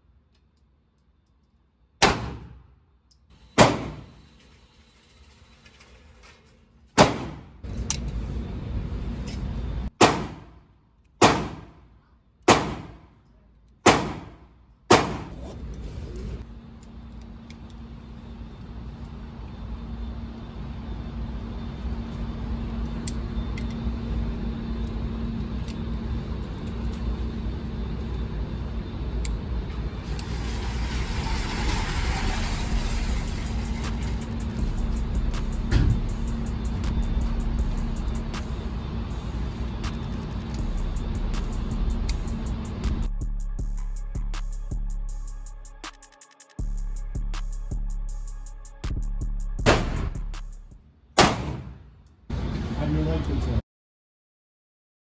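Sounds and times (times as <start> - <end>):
low rumble with hum: 0.0 - 53.6
pistol shots: 2.0 - 2.6, 3.6 - 4.0, 7.0 - 7.4, 10.0 - 10.6, 11.2 - 11.8, 12.5 - 13.0, 13.8 - 15.4, 49.7 - 50.1, 51.2 - 51.8.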